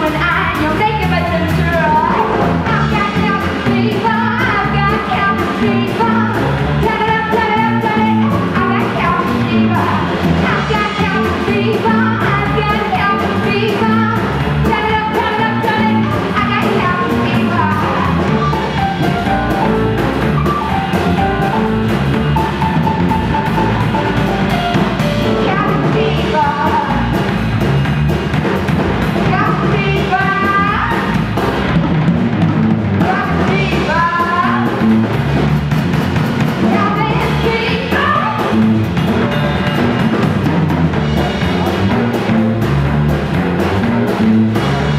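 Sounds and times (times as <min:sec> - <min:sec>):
jazz band playing: 0:00.0 - 0:44.9.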